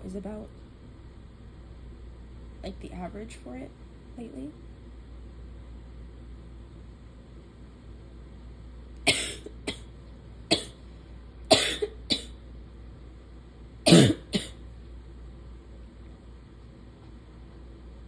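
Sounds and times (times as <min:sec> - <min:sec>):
woman coughing: 0:09.1 - 0:09.9, 0:10.5 - 0:10.7, 0:11.5 - 0:12.3, 0:13.9 - 0:14.6.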